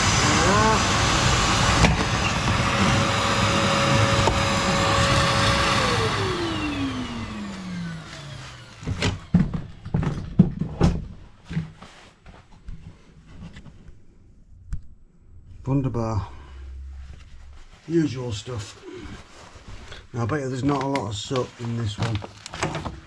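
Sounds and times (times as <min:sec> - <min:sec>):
vacuum cleaner motor: 0:00.0 - 0:10.5, 0:20.9 - 0:23.0
knocks and clatters: 0:08.8 - 0:12.0.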